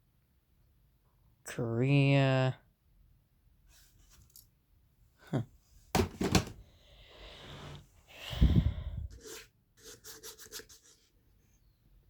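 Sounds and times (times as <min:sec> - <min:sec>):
heavy thud: 0:06.0 - 0:06.6.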